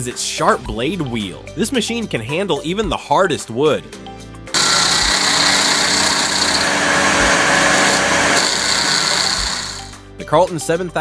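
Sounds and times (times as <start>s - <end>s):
stump grinder cutting wood: 4.6s - 10.0s.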